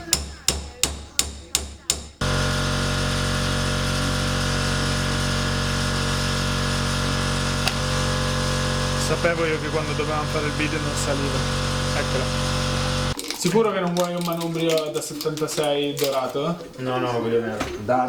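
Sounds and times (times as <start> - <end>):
sharp rhythmic tool strikes: 0.0 - 2.2.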